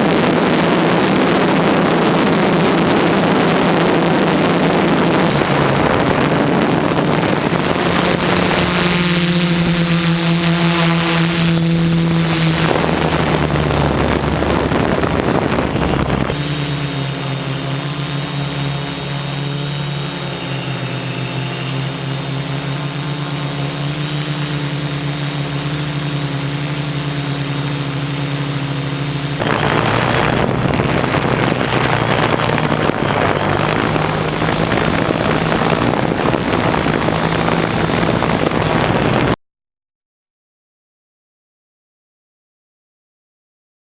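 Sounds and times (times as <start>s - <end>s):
wind rushing on microphone: 0.0s - 22.7s, 29.3s - 39.4s
drone motors humming: 0.0s - 39.4s.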